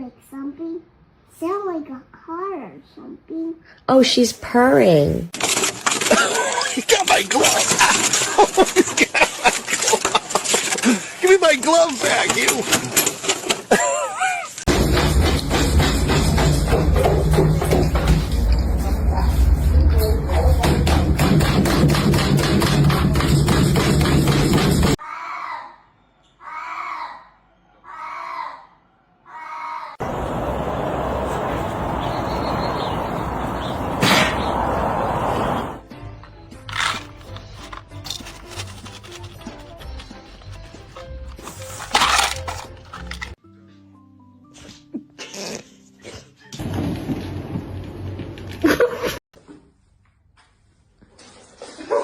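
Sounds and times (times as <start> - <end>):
animal calling: 30.0 - 35.8
steady rushing hiss: 30.0 - 35.8.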